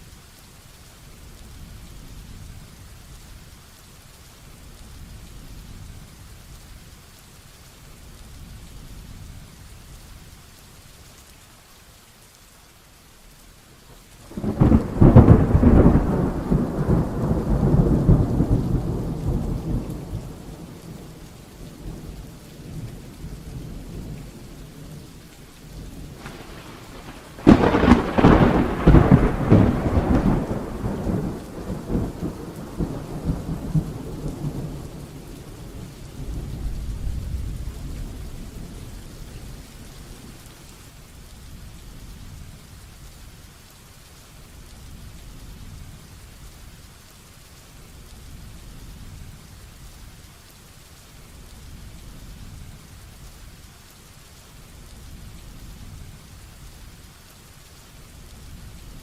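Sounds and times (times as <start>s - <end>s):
steady rain: 0.0s - 59.0s
thunder claps rumbling: 14.2s - 25.1s, 25.8s - 40.4s.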